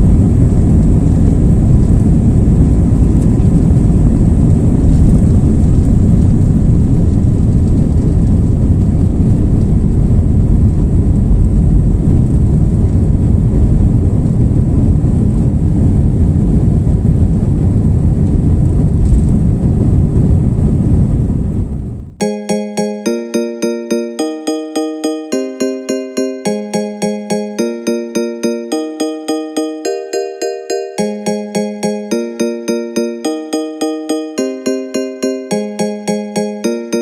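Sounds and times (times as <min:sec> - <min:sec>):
jet engines rumbling in cabin: 0:00.0 - 0:22.2
rushing air: 0:19.4 - 0:22.2.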